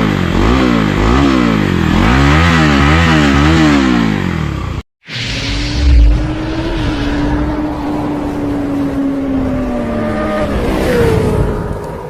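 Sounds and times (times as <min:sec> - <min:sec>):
engine humming steadily: 0:00.0 - 0:04.8
motorcycle engine revving: 0:00.0 - 0:04.8, 0:05.5 - 0:12.0.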